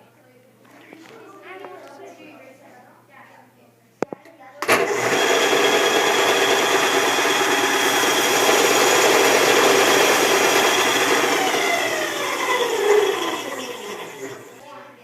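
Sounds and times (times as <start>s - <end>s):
belt sander whining: 4.6s - 14.6s.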